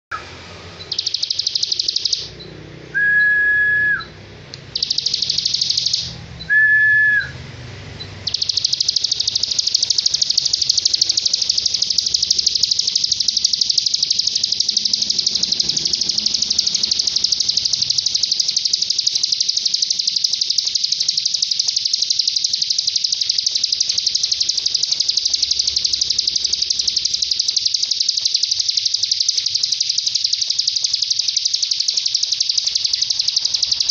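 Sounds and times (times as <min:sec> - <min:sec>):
songbird trilling: 0:00.9 - 0:02.3, 0:04.8 - 0:06.1, 0:08.3 - 0:20.4
bird whistled note: 0:03.0 - 0:04.2.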